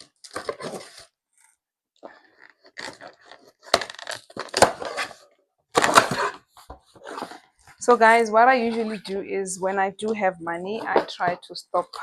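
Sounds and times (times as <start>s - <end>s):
cardboard tearing: 2.5s - 5.2s.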